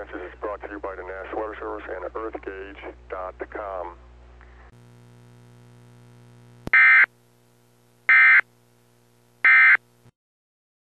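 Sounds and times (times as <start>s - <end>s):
low steady hum: 0.0s - 10.1s.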